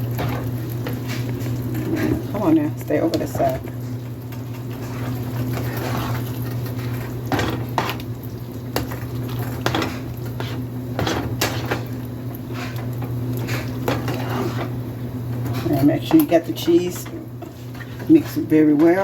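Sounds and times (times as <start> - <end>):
spoon scraping a pan: 4.3 - 8.1, 8.8 - 14.8.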